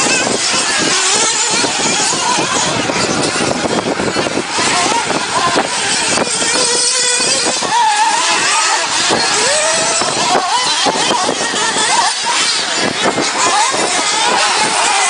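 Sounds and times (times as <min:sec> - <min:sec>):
steady rushing noise: 0:00.0 - 0:15.0
toy car electric motors whining: 0:00.0 - 0:15.0.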